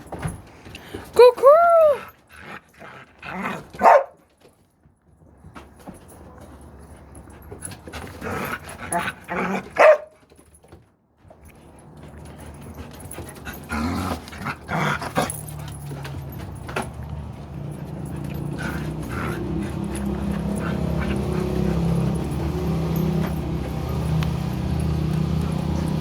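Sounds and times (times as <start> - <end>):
dog barking and yipping: 3.3 - 4.2, 8.4 - 10.2, 17.6 - 26.0.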